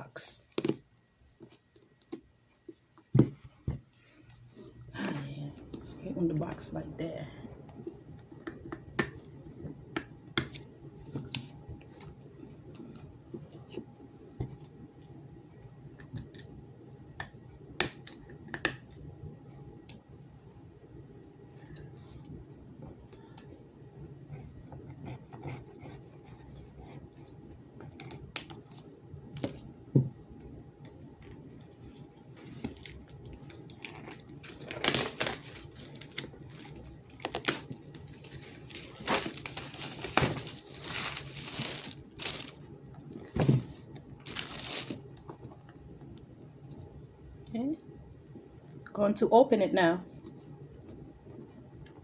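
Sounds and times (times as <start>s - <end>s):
packaging tearing and crinkling: 32.7s - 42.6s, 44.2s - 45.0s
box being handled: 37.4s - 42.6s.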